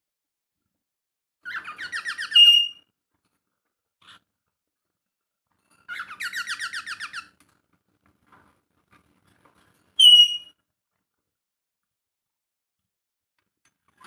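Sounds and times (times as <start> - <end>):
parrot chirps: 1.4 - 2.8, 5.9 - 7.4, 10.0 - 10.5
parrot whistle: 1.5 - 2.8, 10.0 - 10.5.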